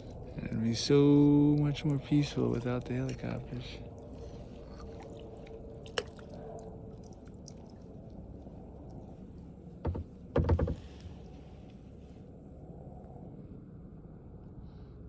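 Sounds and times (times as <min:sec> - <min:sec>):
paddle knocking against boat hull: 0:09.8 - 0:11.1.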